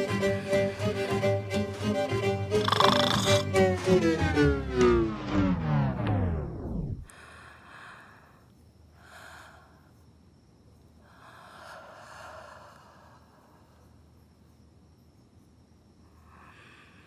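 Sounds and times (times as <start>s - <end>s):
person snoring softly: 2.5s - 3.5s.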